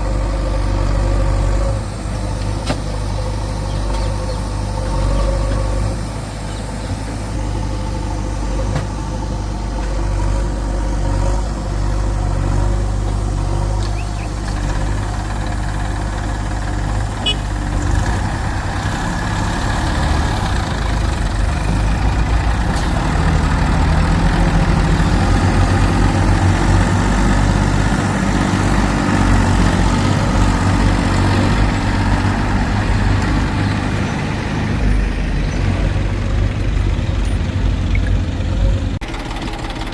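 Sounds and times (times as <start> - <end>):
diesel engines running: 0.0 - 39.9.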